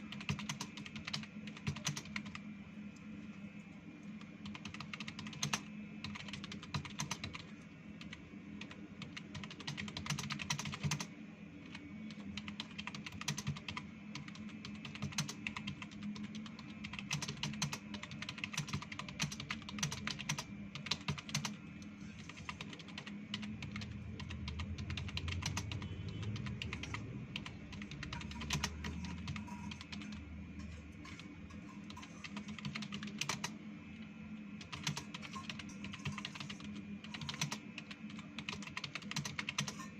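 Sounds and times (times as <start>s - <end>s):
fast keyboard typing: 0.0s - 2.4s, 4.2s - 33.6s, 34.6s - 39.9s
steady low hum: 0.0s - 39.9s.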